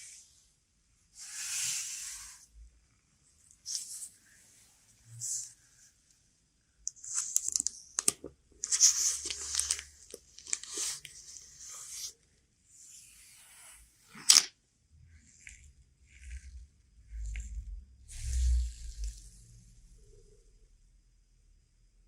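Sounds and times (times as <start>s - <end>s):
packaging rustling and tearing: 7.1s - 11.1s.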